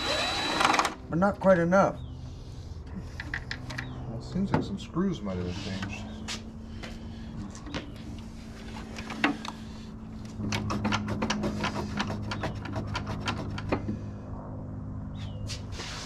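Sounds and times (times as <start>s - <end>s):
drill motor whirring: 0.0s - 1.0s.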